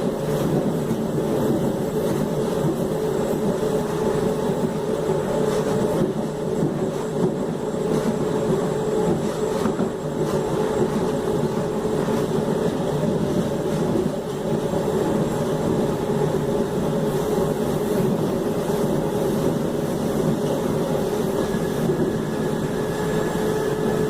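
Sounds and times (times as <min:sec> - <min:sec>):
train running noise: 0:00.0 - 0:24.0
electric train motor whine: 0:14.1 - 0:24.0.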